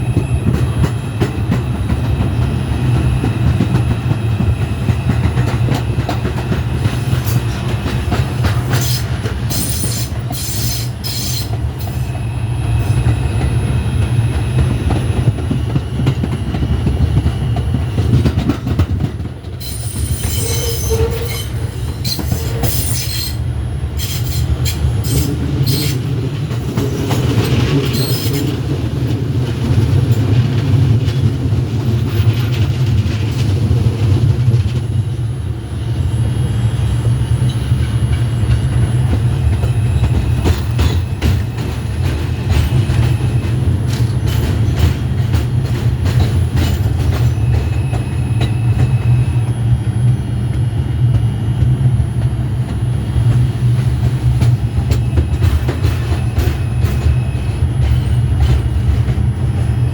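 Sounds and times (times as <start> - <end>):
subway train rumble and clatter: 0.0 - 59.9
high-pitched wheel squeals: 19.6 - 23.4.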